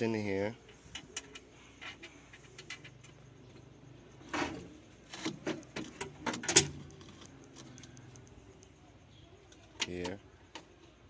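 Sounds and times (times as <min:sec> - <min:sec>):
door lock parts clicking and knocking: 0:05.0 - 0:08.3, 0:09.5 - 0:10.7.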